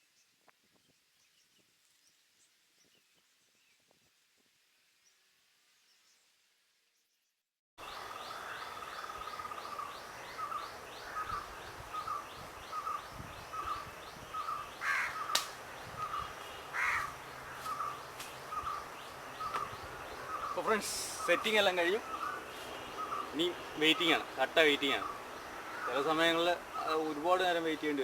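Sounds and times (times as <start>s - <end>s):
harsh crow-like call: 8.4s - 12.2s, 14.4s - 18.8s, 22.0s - 24.2s, 24.8s - 27.0s.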